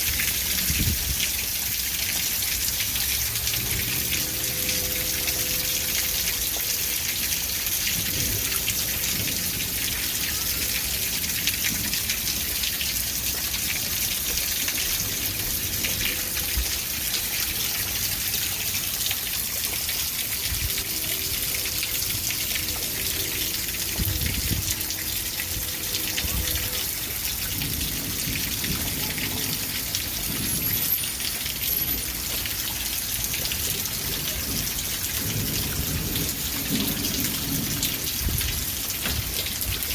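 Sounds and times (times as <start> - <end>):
rain pattering: 0.0 - 39.9.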